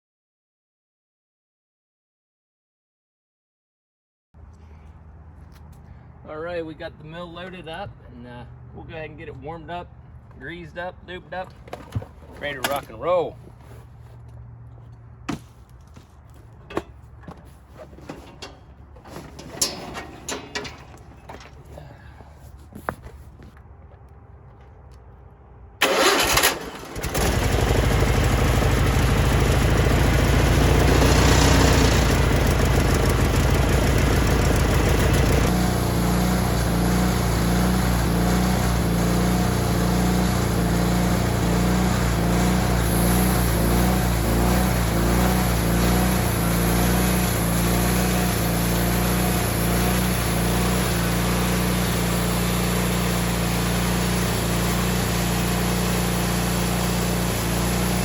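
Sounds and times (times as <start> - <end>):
sawmill engine starting and idling: 25.8 - 58.0.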